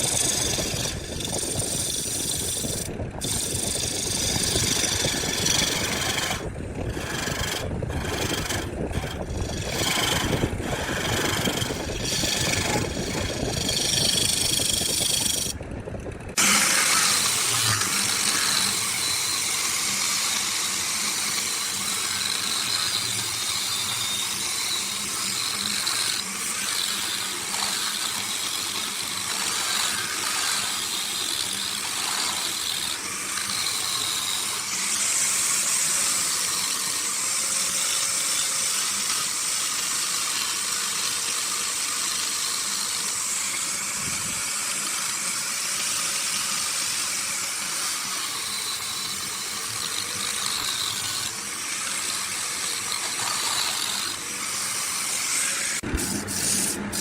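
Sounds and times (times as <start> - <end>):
high hissing machine: 16.4 - 57.0.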